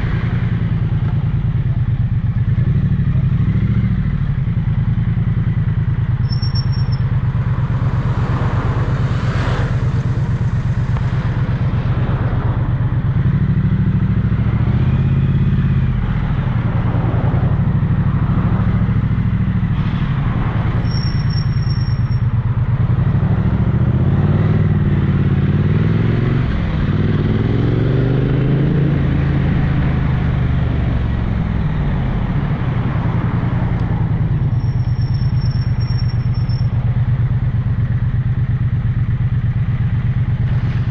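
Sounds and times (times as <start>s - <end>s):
motorcycle engine revving: 0.0s - 40.9s
short high-pitched beep: 6.3s - 7.0s.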